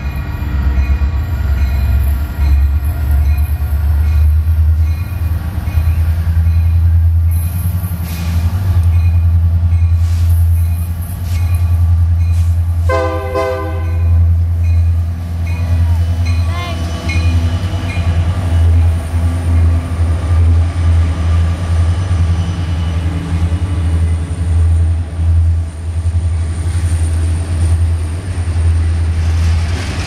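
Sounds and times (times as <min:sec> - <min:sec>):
train rumbling past: 0:00.0 - 0:30.0
locomotive horn: 0:12.8 - 0:14.3.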